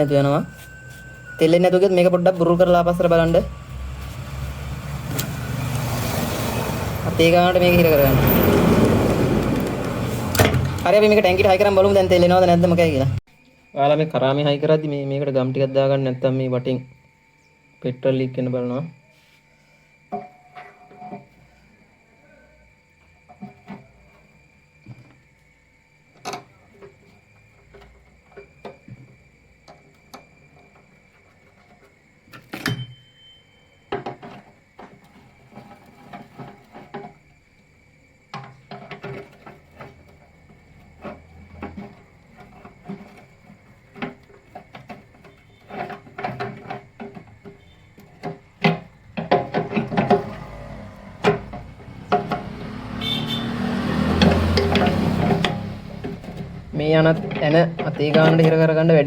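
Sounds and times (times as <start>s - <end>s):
clicks and knocks of parts: 38.3s - 52.7s, 54.0s - 58.8s.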